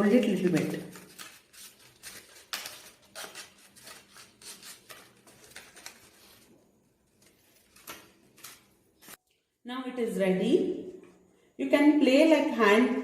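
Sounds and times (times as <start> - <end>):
paper rustling and crinkling: 0.2 - 9.2.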